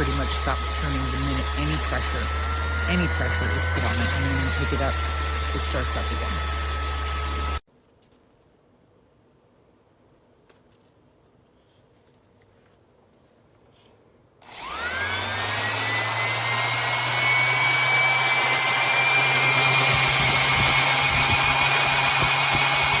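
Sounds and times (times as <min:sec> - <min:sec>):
orbital sander motor whining: 0:00.0 - 0:07.6, 0:14.4 - 0:23.0.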